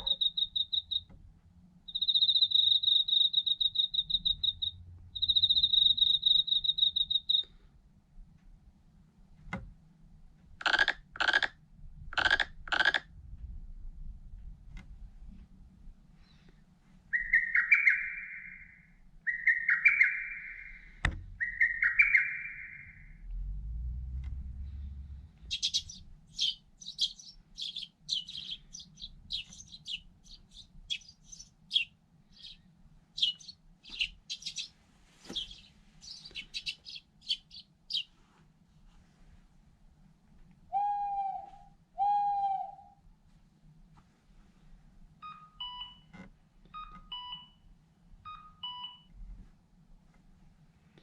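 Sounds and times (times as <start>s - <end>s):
bird calls: 0.0s - 1.1s, 1.9s - 7.5s, 17.1s - 23.2s, 25.5s - 38.1s
quick high bird chirps: 0.0s - 1.1s, 1.9s - 7.5s, 17.1s - 23.1s, 25.5s - 32.6s, 33.2s - 38.1s.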